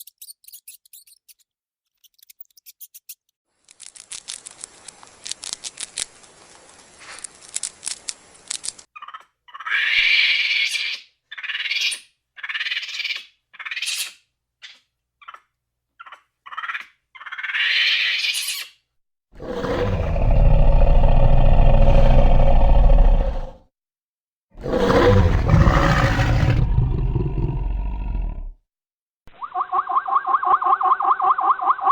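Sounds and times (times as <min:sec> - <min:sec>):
high-pitched squeaky animal calls: 0:09.0 - 0:18.8, 0:29.3 - 0:31.9
loud animal roars: 0:19.4 - 0:23.7, 0:24.6 - 0:28.6.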